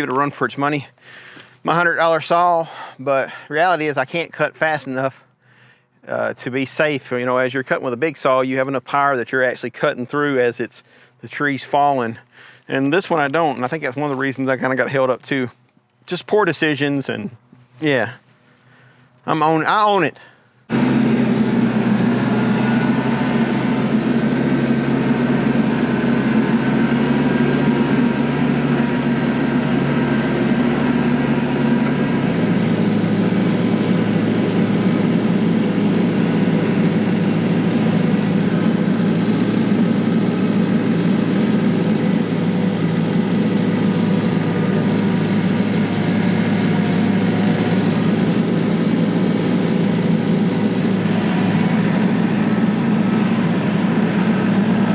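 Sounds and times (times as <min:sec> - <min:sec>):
engine running: 0:11.6 - 0:54.9.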